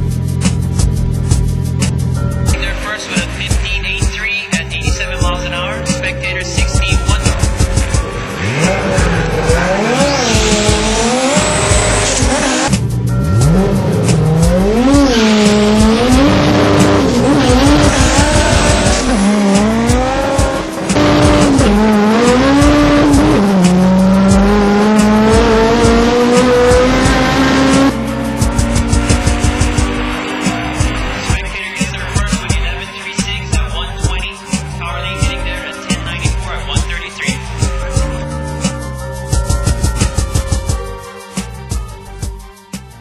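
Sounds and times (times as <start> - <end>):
music with a steady beat: 0.0 - 43.0
racing engine accelerating: 6.5 - 33.4.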